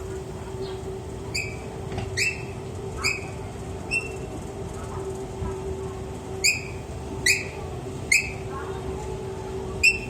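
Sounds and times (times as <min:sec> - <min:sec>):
escalator humming: 0:00.0 - 0:10.0
short high squeaks: 0:01.3 - 0:04.3.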